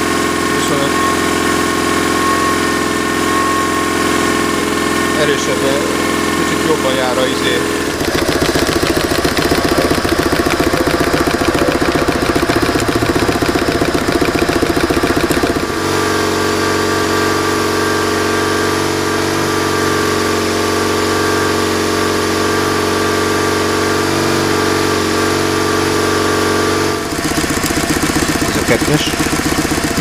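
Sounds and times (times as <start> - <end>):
motorcycle engine idling: 4.4 - 15.9, 27.0 - 30.0.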